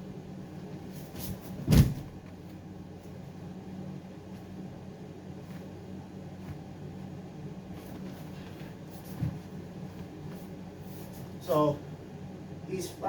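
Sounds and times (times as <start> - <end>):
heavy thud on floor mat: 1.2 - 2.4, 9.1 - 9.5.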